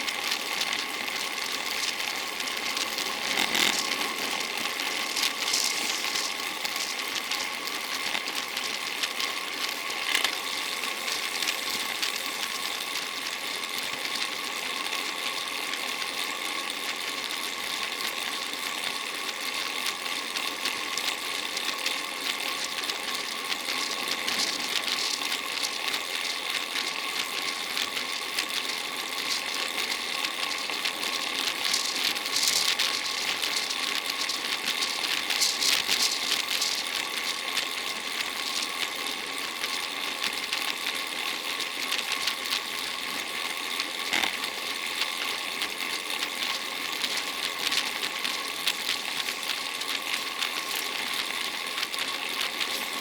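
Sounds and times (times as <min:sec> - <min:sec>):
bicycle chain whirring: 0:00.0 - 0:53.0
ratchet-like clicking: 0:00.6 - 0:12.5, 0:21.9 - 0:39.9.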